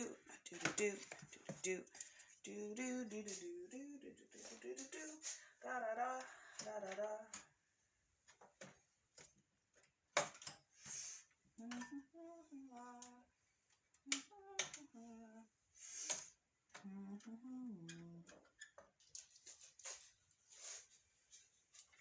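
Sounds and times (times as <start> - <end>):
person humming low notes: 16.8 - 18.3.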